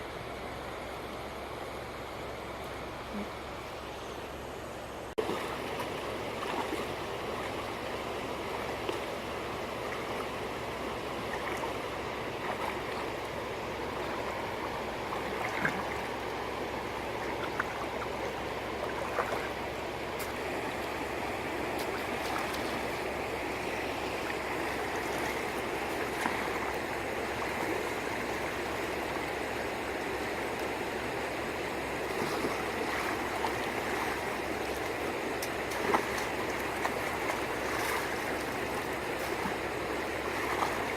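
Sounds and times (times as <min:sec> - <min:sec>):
running water rushing: 0:00.0 - 0:40.9
small splashes and clicks: 0:15.1 - 0:16.1, 0:18.8 - 0:19.6, 0:21.7 - 0:23.1, 0:24.2 - 0:26.8, 0:32.1 - 0:40.9.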